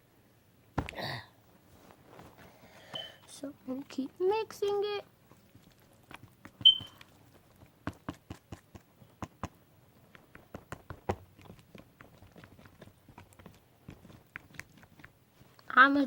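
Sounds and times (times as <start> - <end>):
stick stirring slime: 2.2 - 16.0
short high squeak: 6.6 - 7.0.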